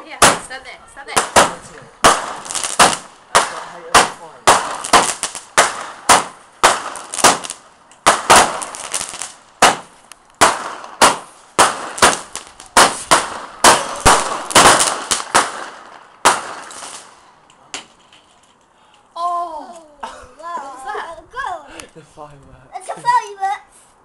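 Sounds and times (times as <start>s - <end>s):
fireworks hissing and crackling: 0.0s - 18.7s, 22.8s - 24.0s
firework barrage bangs: 0.1s - 17.2s.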